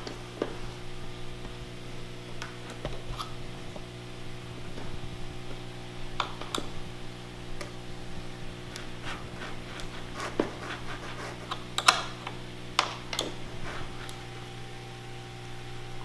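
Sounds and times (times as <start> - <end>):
steady low hum: 0.0 - 16.0
screwdriver clicks and ticks: 11.5 - 13.4.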